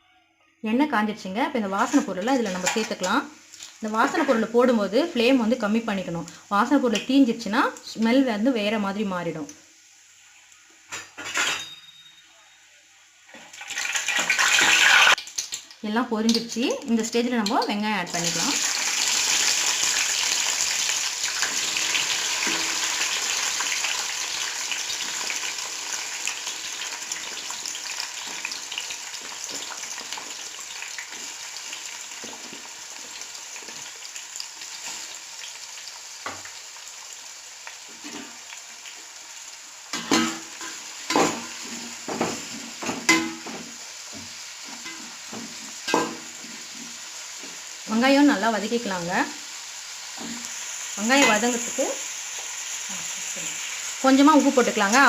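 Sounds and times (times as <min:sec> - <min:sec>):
onions sizzling in hot oil: 0:01.2 - 0:11.6, 0:13.1 - 0:55.0
spoon scraping a pan: 0:01.8 - 0:03.0.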